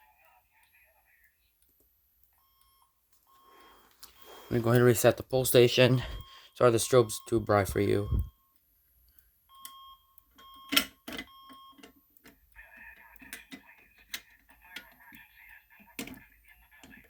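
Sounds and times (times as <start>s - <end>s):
short electronic beeps: 5.8s - 8.5s
fire alarm pull station clicks: 10.4s - 12.4s.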